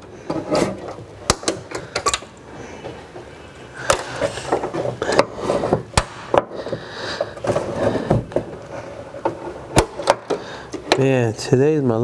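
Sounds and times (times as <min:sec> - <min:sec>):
plastic rubbing: 0:02.8 - 0:11.1.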